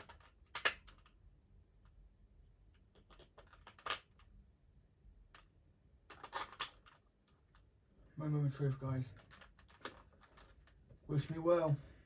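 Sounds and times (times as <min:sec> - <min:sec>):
plastic toy clicking: 0:00.0 - 0:01.2, 0:03.0 - 0:04.3, 0:06.1 - 0:07.6.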